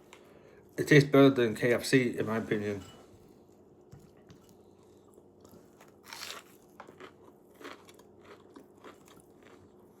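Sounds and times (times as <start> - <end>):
chewing crunches: 4.8 - 10.0
crunchy food bite: 5.8 - 9.9.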